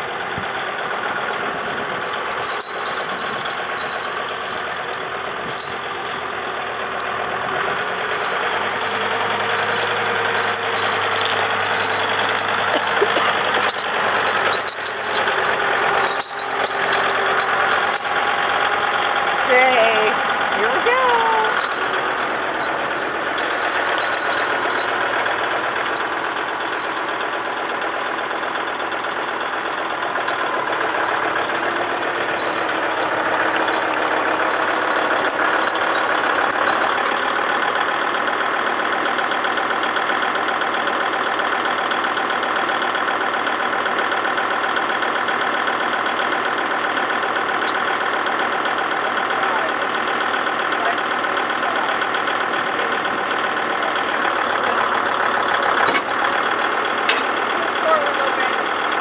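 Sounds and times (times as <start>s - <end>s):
tractor diesel engine running: 0.0s - 59.0s.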